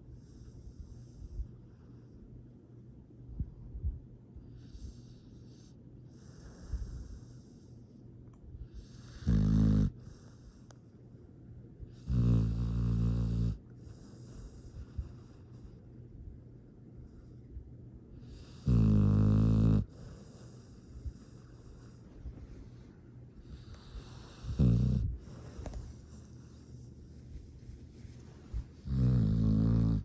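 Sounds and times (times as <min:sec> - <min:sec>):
pet breathing quietly: 0:00.0 - 0:02.6, 0:03.4 - 0:30.0
pet snoring: 0:08.8 - 0:10.6, 0:11.9 - 0:15.7, 0:18.2 - 0:27.4, 0:28.5 - 0:30.0.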